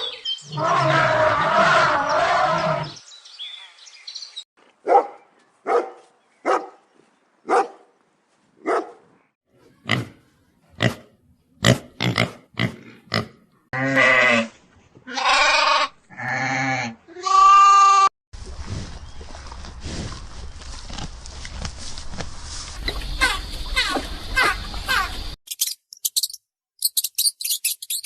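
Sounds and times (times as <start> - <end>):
animal bleating: 13.7 - 18.1.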